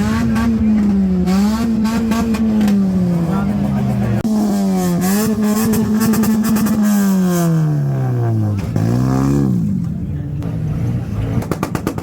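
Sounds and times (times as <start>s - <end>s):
car engine revving: 0.0s - 12.0s
exhaust pops and bangs: 11.3s - 12.0s.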